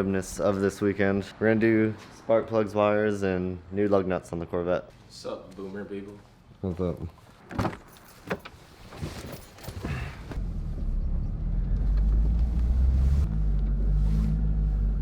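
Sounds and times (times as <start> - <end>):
car engine rumbling: 10.3 - 15.0.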